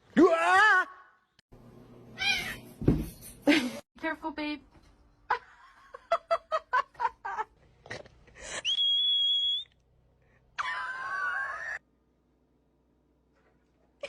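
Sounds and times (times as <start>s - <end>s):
high whistle: 8.6s - 9.8s.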